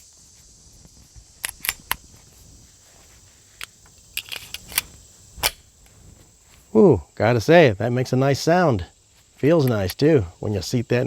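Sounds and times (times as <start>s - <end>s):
magazine seating click: 1.4s - 2.0s, 3.6s - 5.6s
pistol metallic clicks: 1.4s - 2.0s, 3.6s - 5.7s.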